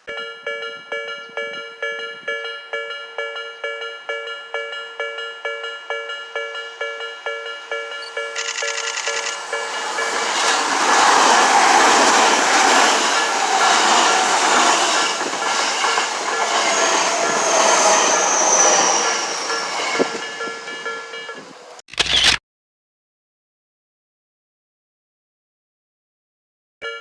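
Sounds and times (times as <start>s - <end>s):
level crossing bell ringing: 0.0s - 10.2s
thin high tone sliding down: 7.8s - 21.7s
train wheels clicking over rail joints: 8.0s - 20.8s.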